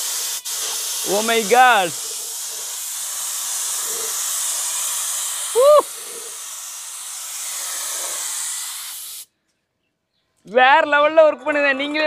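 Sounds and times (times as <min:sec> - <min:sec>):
spray gun air hissing: 0:00.0 - 0:09.3.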